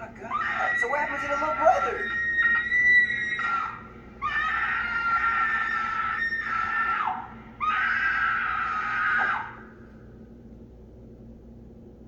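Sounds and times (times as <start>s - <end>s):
high-pitched screams: 0.3s - 9.8s.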